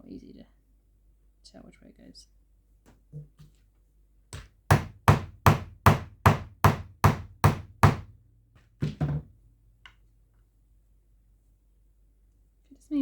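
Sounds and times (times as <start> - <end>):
hammer striking metal tool: 4.7 - 8.1.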